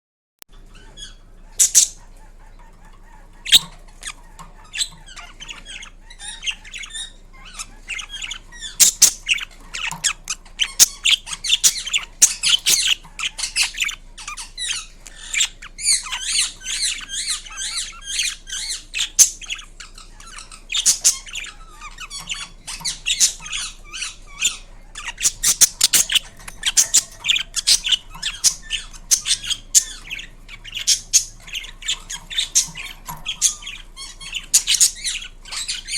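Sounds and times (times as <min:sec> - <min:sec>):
parakeet squawking: 0:00.5 - 0:35.9.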